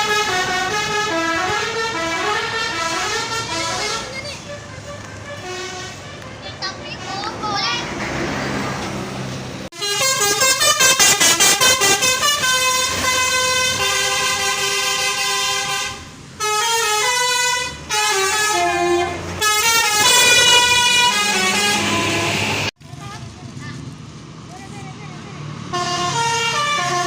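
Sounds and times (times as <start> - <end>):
bus horn playing a tune: 0.0 - 6.5, 9.7 - 22.7, 25.7 - 27.0.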